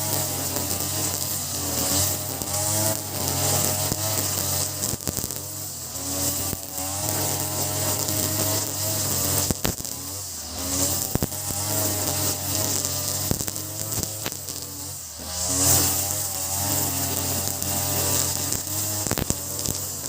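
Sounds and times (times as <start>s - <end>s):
brush cutter engine running: 0.0s - 20.0s
sharp clicks: 6.2s - 9.9s, 10.8s - 14.8s, 15.6s - 20.0s.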